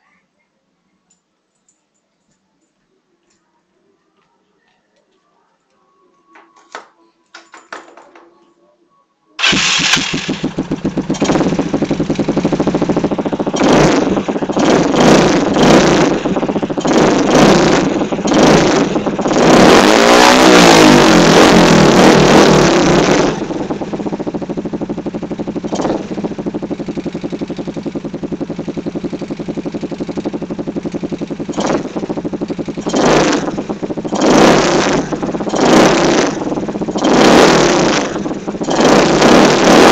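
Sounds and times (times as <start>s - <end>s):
scooter engine revving: 9.4s - 39.9s.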